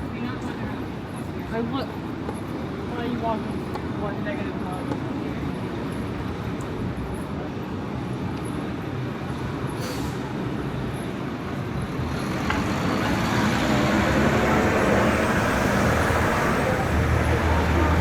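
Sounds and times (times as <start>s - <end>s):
road traffic roar: 0.0s - 18.0s
brief hiss: 9.8s - 10.2s
vehicle approaching: 12.0s - 18.0s.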